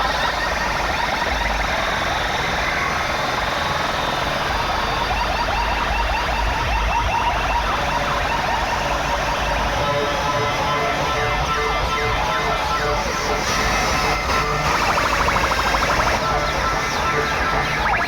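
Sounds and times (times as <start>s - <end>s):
electronic pitch sweeps: 12.8s - 18.0s.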